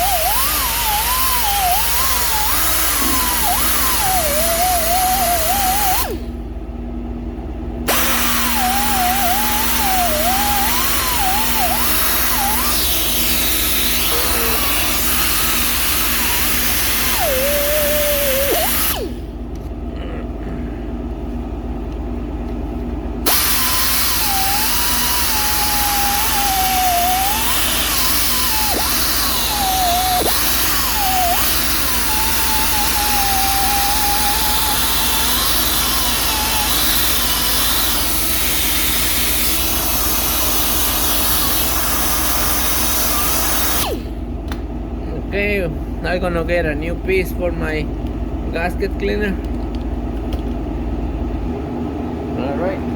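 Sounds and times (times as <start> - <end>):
power tool whining: 0.0 - 6.4, 7.8 - 19.6, 23.2 - 44.6.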